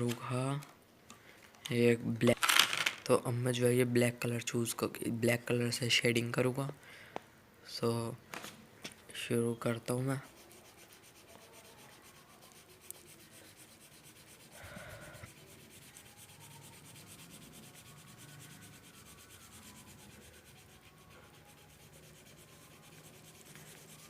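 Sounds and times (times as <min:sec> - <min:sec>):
felt-tip pen scratching on paper: 0:10.2 - 0:24.0.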